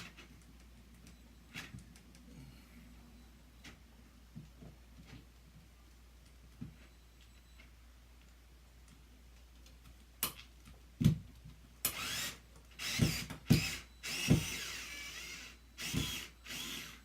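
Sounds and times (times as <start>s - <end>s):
cordless drill driving screws: 11.9s - 17.0s.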